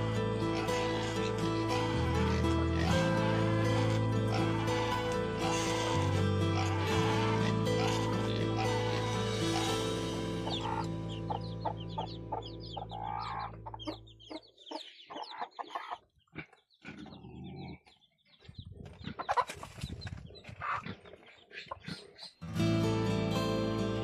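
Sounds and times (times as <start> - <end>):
background music: 0.0 - 14.4, 22.4 - 24.0
chickens clucking: 0.5 - 22.4.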